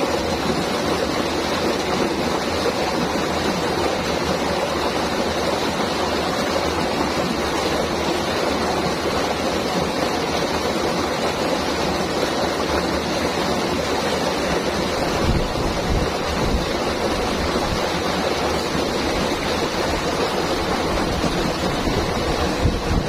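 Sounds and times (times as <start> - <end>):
river water rushing: 0.0 - 23.0.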